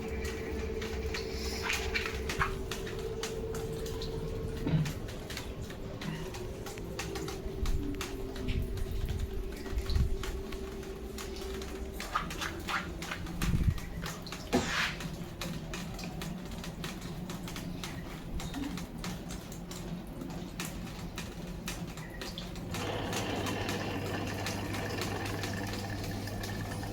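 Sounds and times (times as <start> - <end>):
washing machine clicks and knocks: 1.8 - 10.8.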